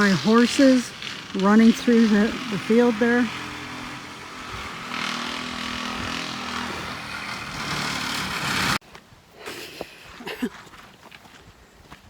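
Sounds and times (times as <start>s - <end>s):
engine-like running noise: 0.0s - 8.8s.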